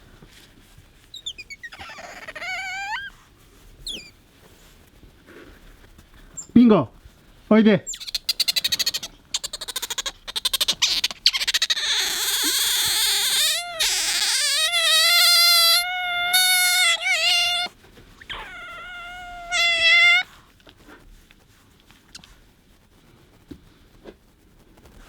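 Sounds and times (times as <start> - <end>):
otter whistling squeals: 1.1 - 3.1, 3.9 - 4.2, 7.9 - 20.2
otter chirping: 1.1 - 3.2, 3.8 - 4.2, 7.9 - 20.2.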